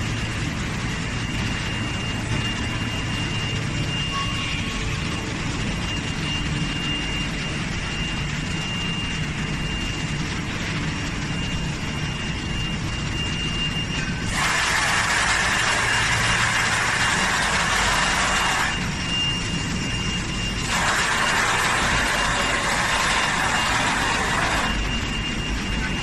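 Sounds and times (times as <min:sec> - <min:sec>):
machine low hum: 0:00.0 - 0:26.0
thin high whine: 0:00.0 - 0:26.0.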